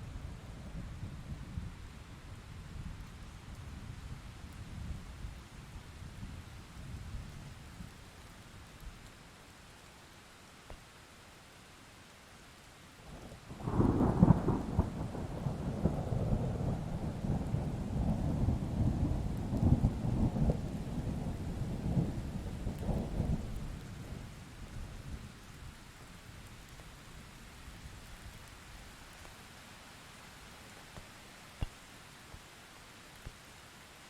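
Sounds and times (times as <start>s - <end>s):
steady rain: 0.0s - 34.0s
thunder crack and rumble: 13.6s - 24.3s.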